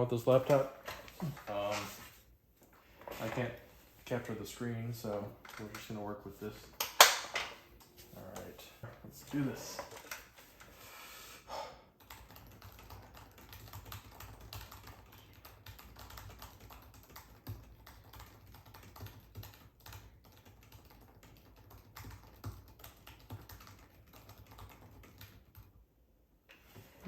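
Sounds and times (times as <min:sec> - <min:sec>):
laptop keyboard typing: 0:11.9 - 0:25.9.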